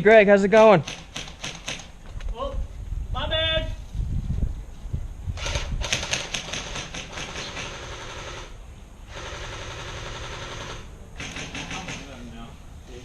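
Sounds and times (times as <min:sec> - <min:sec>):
airsoft rifle firing on full auto: 0:05.4 - 0:08.5, 0:09.1 - 0:12.2.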